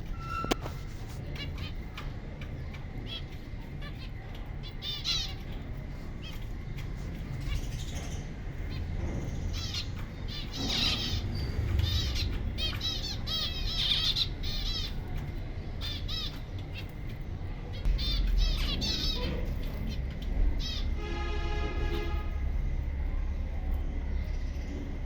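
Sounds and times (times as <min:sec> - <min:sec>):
finches chirping: 0:00.0 - 0:21.0
steady low rumble: 0:00.0 - 0:25.0.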